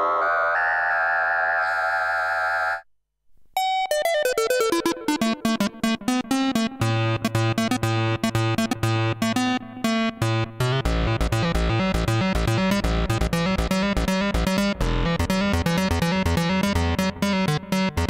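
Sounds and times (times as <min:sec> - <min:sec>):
held synth tone: 0:00.0 - 0:02.9
sequenced plucked synth notes: 0:03.8 - 0:16.8.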